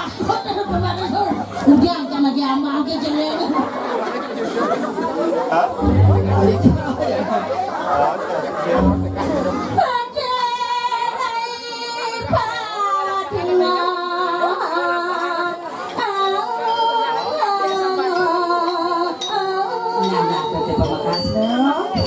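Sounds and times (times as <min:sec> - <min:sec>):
woman singing long notes: 0:00.0 - 0:02.0, 0:05.8 - 0:07.0, 0:08.8 - 0:22.0.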